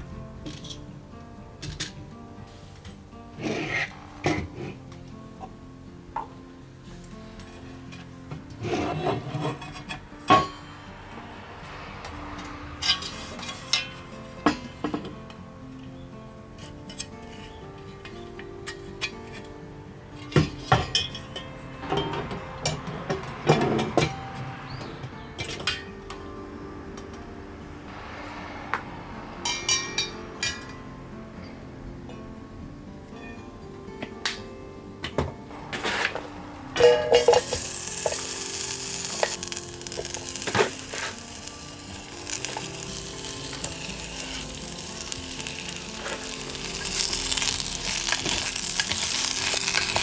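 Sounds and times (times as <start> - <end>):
soft background music: 0.0 - 50.0
cookware and utensils clinking: 1.6 - 2.1, 2.8 - 5.6, 7.4 - 10.8, 20.2 - 25.9, 29.4 - 30.8, 35.1 - 50.0.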